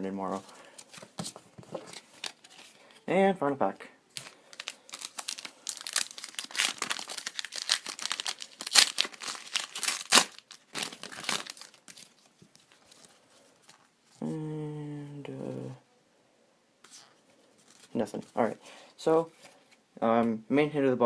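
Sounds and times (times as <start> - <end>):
wrapper crinkling and tearing: 1.9 - 2.8, 4.1 - 13.8.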